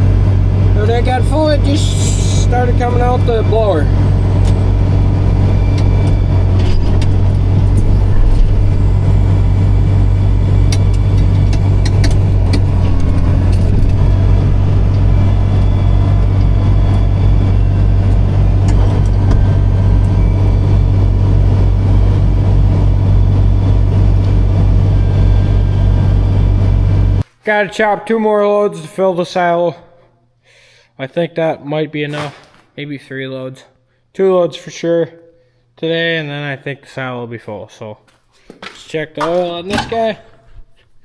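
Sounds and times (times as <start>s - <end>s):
tractor diesel engine running: 0.0s - 27.2s.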